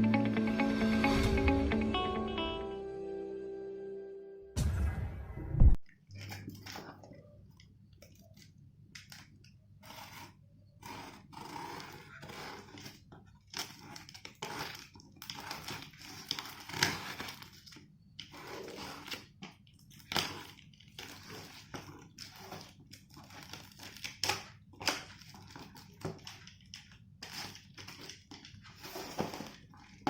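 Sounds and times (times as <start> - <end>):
packaging crinkling and tearing: 11.8 - 30.0.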